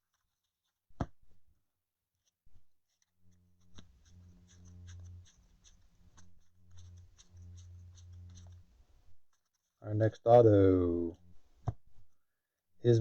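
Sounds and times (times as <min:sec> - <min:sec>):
low hum: 0:03.3 - 0:09.2
trading cards rustling and clicking: 0:03.6 - 0:10.6.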